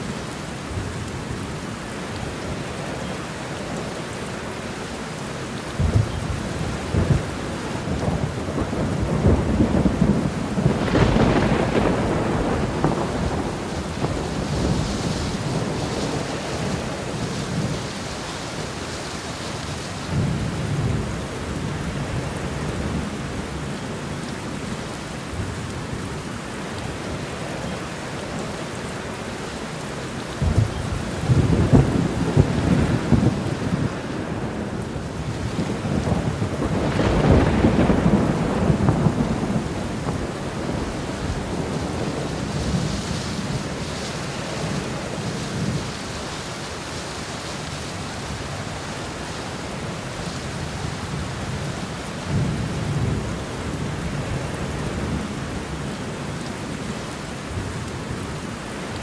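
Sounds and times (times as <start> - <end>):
heavy rain: 0.0 - 59.0
thunder rumbling: 5.8 - 23.6, 30.3 - 56.1.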